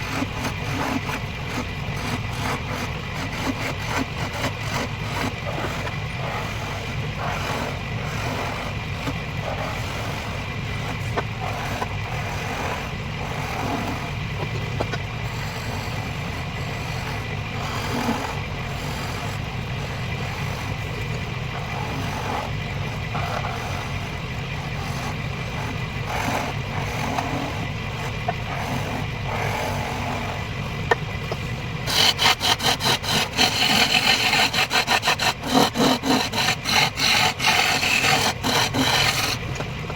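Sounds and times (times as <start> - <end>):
tool scraping turning wood: 0.0 - 39.9
wood lathe motor running: 0.0 - 39.9
fast rhythmic rasping: 31.8 - 39.6.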